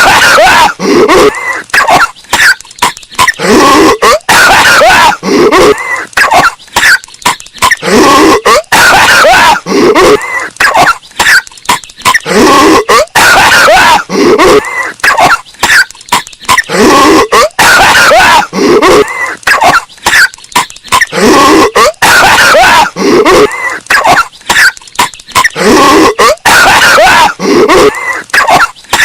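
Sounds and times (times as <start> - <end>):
cartoon character coughing distorted: 0.0 - 29.0.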